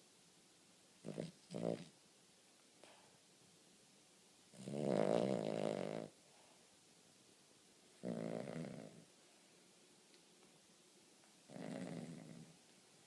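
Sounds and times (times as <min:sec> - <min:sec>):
dog snoring: 0:01.0 - 0:01.9, 0:04.5 - 0:06.2, 0:08.0 - 0:09.1, 0:11.5 - 0:12.6.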